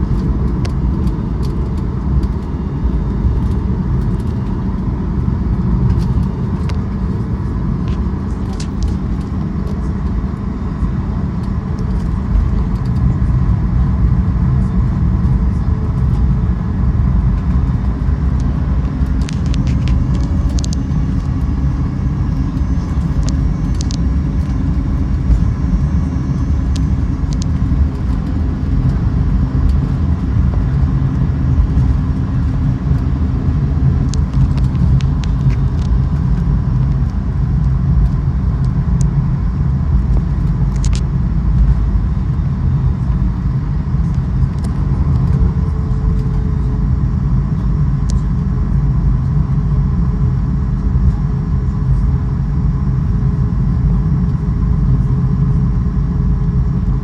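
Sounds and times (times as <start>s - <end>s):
vehicle rumble from inside: 0.0s - 57.0s
light clicks and rattles: 5.8s - 9.8s, 17.4s - 30.7s.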